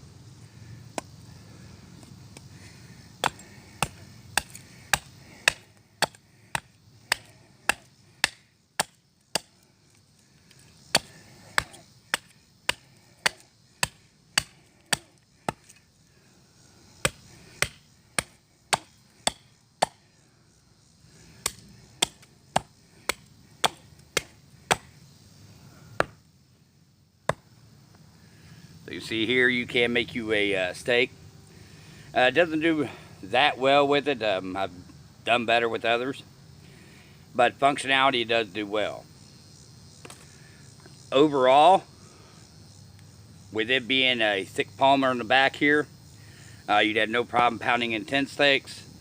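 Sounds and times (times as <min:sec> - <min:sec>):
hatchet chopping wood: 0:03.2 - 0:09.6, 0:10.9 - 0:15.8, 0:17.0 - 0:20.0, 0:21.4 - 0:24.9, 0:26.0 - 0:26.2, 0:27.3 - 0:27.5.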